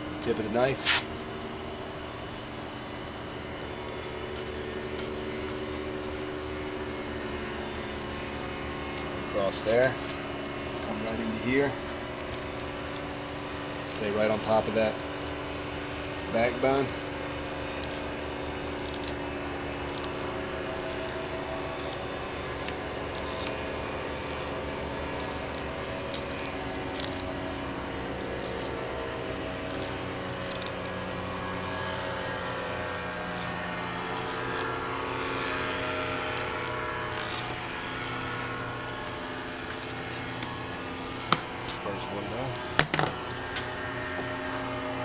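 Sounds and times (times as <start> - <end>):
steady mechanical hum: 0.0 - 45.0
knife scraping over fish bone: 0.8 - 1.1.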